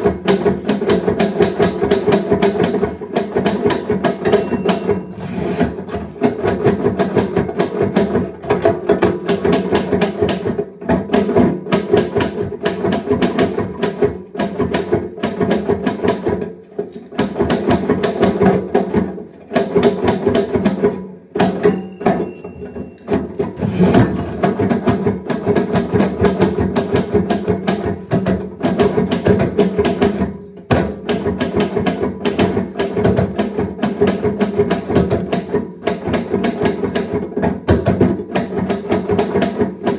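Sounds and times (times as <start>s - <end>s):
typewriter bell ring: 4.2s - 5.2s, 21.6s - 23.2s.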